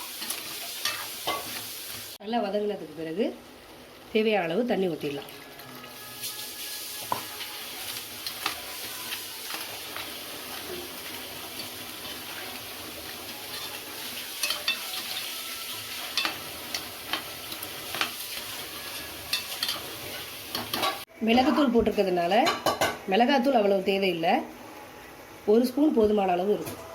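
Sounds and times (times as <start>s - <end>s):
food sizzling in a pan: 0.0s - 23.6s
spoon scraping a pan: 6.3s - 21.6s.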